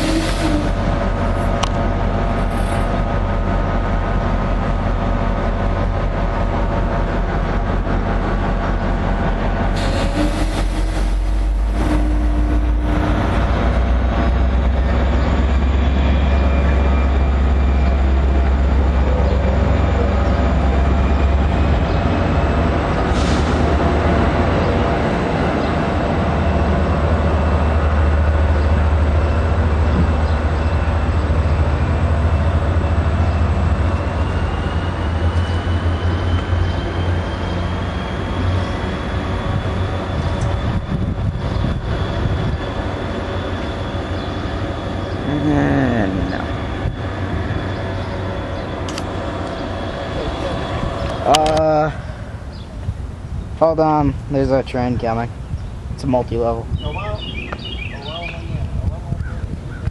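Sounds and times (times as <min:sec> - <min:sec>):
locomotive engine rumble: 0:00.0 - 0:59.9
burst of hiss: 0:09.8 - 0:11.5.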